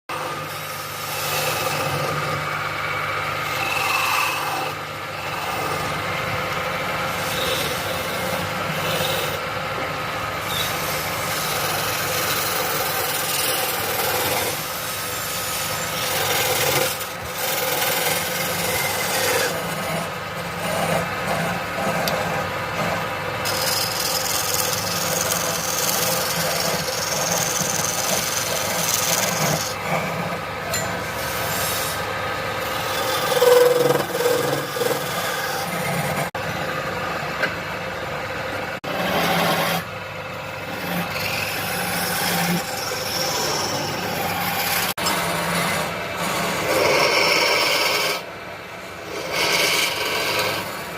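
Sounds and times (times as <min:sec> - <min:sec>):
tool scraping on wood: 0:00.1 - 0:36.4, 0:38.8 - 0:39.9, 0:40.6 - 0:48.3, 0:49.0 - 0:50.9.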